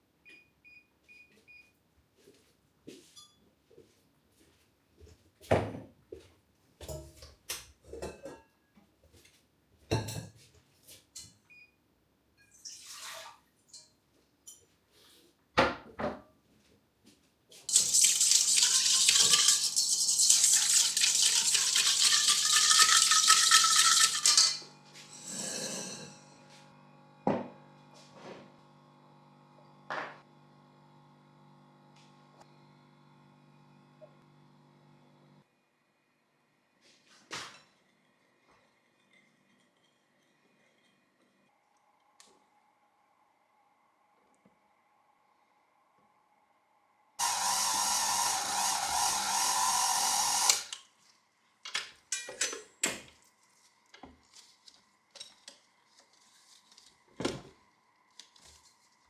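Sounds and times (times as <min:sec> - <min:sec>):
dishes and utensils clinking: 0:06.8 - 0:08.6, 0:17.7 - 0:26.2, 0:52.1 - 0:53.0
tap running into container: 0:17.7 - 0:24.6.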